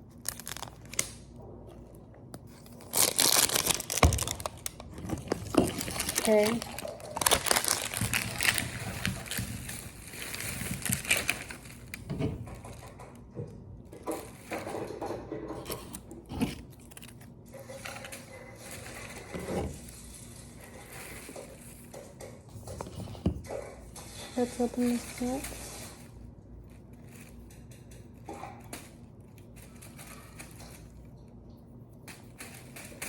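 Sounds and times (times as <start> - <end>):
plastic packaging crinkling: 0.0 - 1.4, 2.3 - 12.9, 15.7 - 22.0, 24.4 - 31.3.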